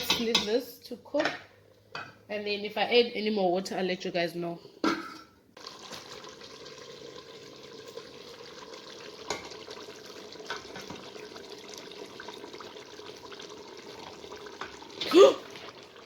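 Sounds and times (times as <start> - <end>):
pot simmering with bubbling: 5.6 - 16.0.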